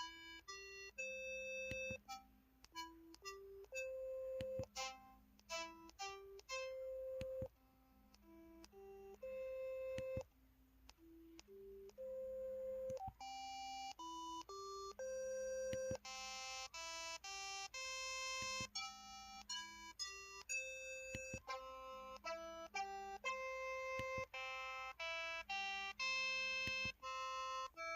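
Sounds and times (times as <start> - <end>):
phone keypad button tones: 0.0 - 2.2, 2.8 - 4.9, 8.2 - 10.3, 11.3 - 21.6.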